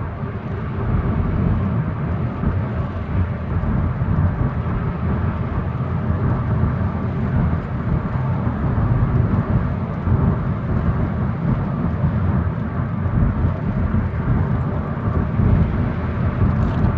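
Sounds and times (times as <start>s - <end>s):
low rumbling grind from car: 15.5s - 16.9s.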